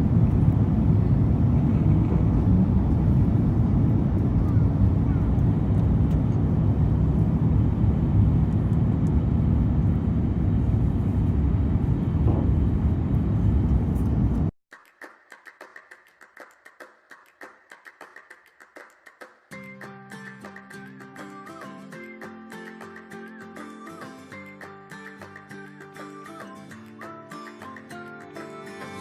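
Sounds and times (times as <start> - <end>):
aircraft engine rumble in cabin: 0.0 - 14.5.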